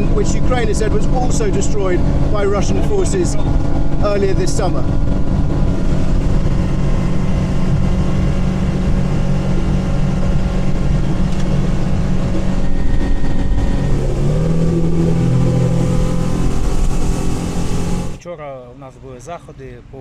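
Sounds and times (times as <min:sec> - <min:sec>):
speedboat engine running: 0:00.0 - 0:18.2.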